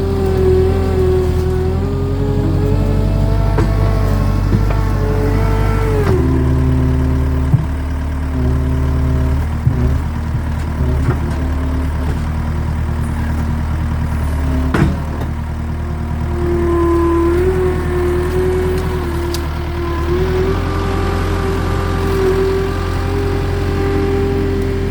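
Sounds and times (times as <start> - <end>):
engine running: 0.0 - 24.9
sharp knocks: 3.3 - 12.5, 14.4 - 15.4.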